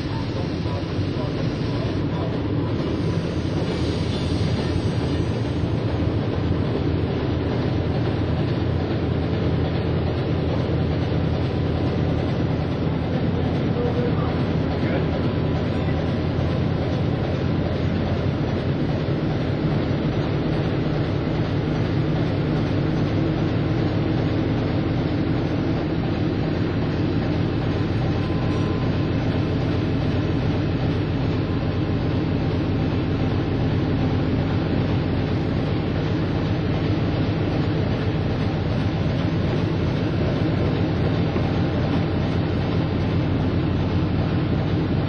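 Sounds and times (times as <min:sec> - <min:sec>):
low machinery rumble: 0:00.0 - 0:45.0.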